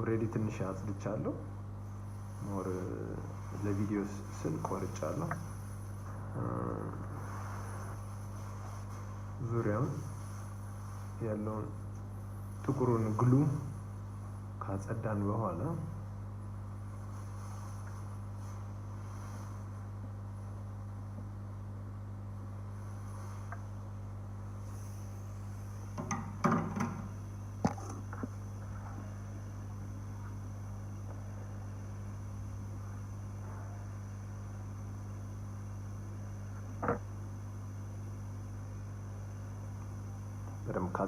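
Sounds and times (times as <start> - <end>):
faint high hiss: 0.0 - 21.2
faint high whine: 0.0 - 41.0
low electrical hum: 0.0 - 41.0.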